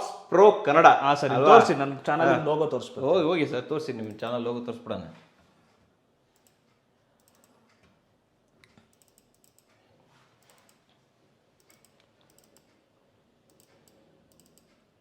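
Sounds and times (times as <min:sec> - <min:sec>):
keyboard typing: 0:08.6 - 0:09.8, 0:10.4 - 0:10.9, 0:11.6 - 0:12.8, 0:13.5 - 0:15.0.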